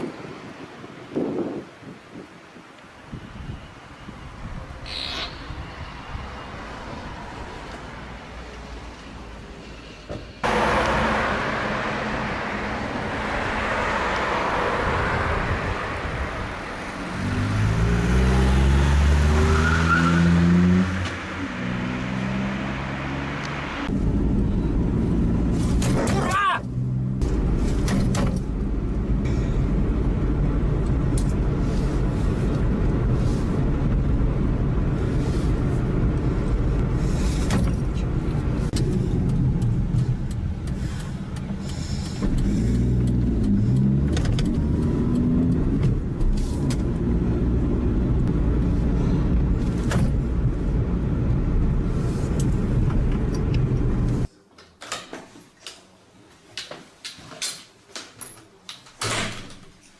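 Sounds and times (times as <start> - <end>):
car engine and road noise: 0.0 - 54.3.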